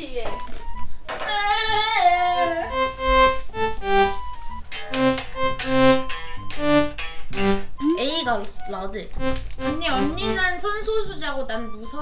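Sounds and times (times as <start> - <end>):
synthesizer single notes: 2.4 - 7.8, 9.2 - 10.6.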